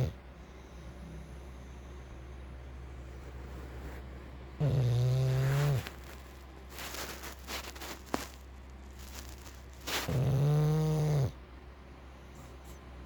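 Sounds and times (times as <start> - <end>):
dog snoring: 0.0 - 1.8, 4.6 - 8.3, 9.0 - 11.4.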